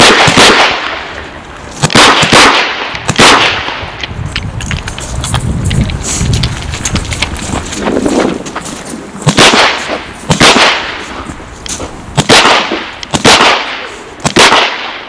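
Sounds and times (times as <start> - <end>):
handgun shots echoing: 0.0 - 1.0, 1.8 - 3.8, 9.2 - 11.0, 12.2 - 15.0.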